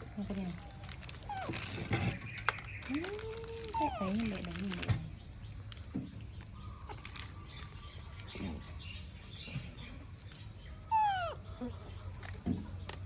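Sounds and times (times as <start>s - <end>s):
baby monkey squealing: 10.9s - 11.4s.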